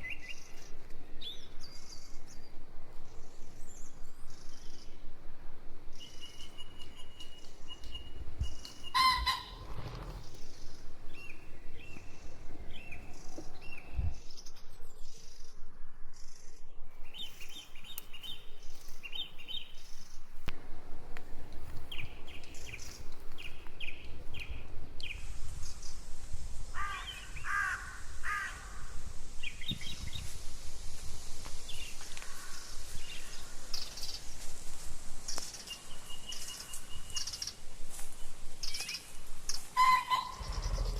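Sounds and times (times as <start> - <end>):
small birds chirping: 0.0 - 15.5, 17.0 - 40.9
chickens calling: 6.3 - 14.1, 39.6 - 40.9.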